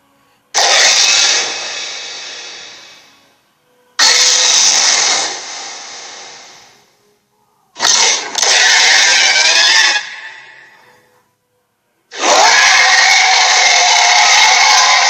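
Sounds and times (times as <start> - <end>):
harsh monster roars: 0.6 - 3.0, 4.0 - 6.7, 7.8 - 10.8, 12.1 - 15.0.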